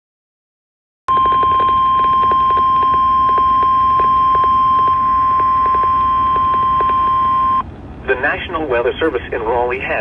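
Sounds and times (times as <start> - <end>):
steady alert tone beep: 1.1 - 7.6
radio static with crackling: 2.1 - 10.0.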